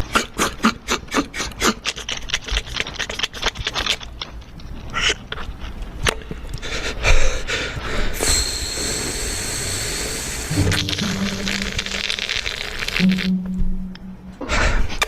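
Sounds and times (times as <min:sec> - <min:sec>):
hiss: 0:08.1 - 0:13.0
needle scraping sugar candy: 0:09.8 - 0:13.3.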